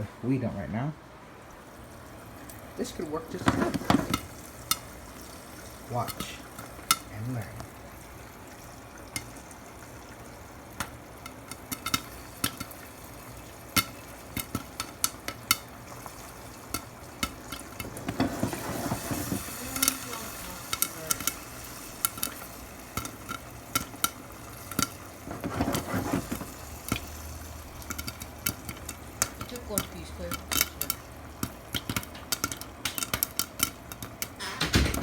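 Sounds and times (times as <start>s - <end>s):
oil sizzling: 0.0s - 35.0s
popcorn kernels popping: 2.0s - 35.0s
shaking in a pan: 2.8s - 4.4s, 17.7s - 22.6s, 24.6s - 35.0s.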